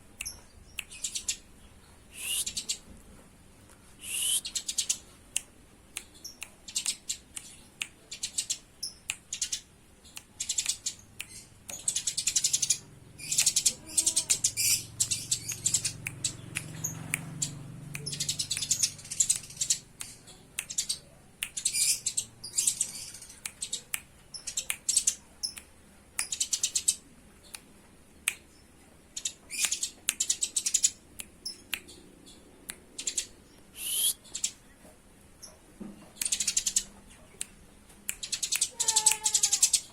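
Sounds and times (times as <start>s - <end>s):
sparrows chirping: 0.2s - 2.8s, 6.2s - 25.6s.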